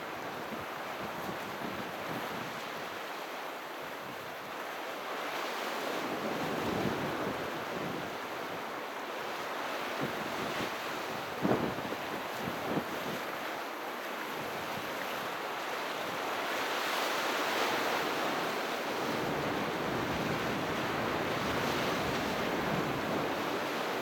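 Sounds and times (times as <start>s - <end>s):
sea waves washing on shore: 5.4s - 24.0s.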